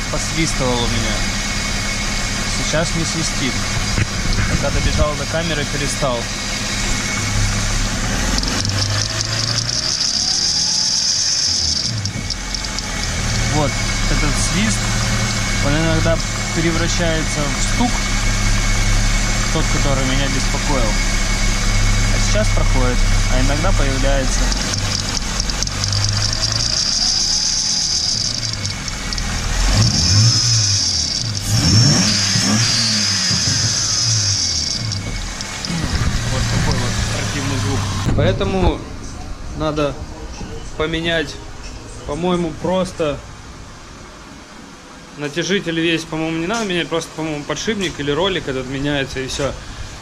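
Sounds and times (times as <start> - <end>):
car engine idling: 0.0 - 50.0
high-pitched belt tensioner whistle: 0.6 - 38.1
pulley knocking: 3.6 - 5.2, 6.8 - 15.3, 23.3 - 37.6.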